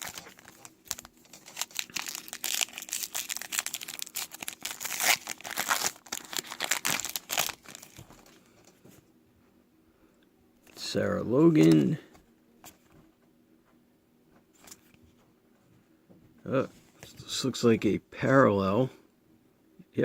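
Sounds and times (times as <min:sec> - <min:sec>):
trading card packs crinkling: 0:00.0 - 0:08.8, 0:10.6 - 0:12.0.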